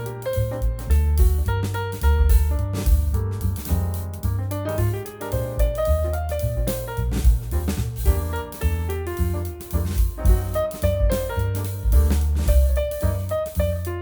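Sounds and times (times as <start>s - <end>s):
piano-led instrumental music: 0.0s - 14.0s.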